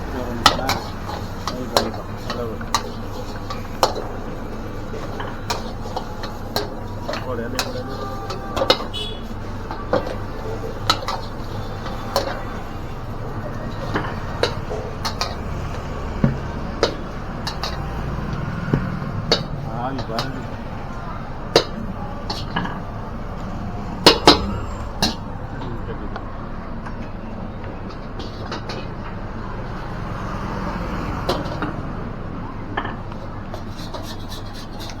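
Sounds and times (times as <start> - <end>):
metal spatula clanking on pan: 5.0 - 9.3, 16.8 - 17.8
steady low rumble: 20.4 - 27.2
clicks and scrapes: 33.5 - 35.0.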